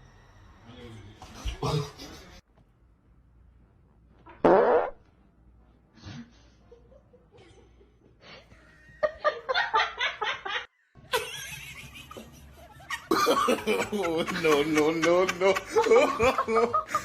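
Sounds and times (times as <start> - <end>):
person laughing: 6.7 - 17.0.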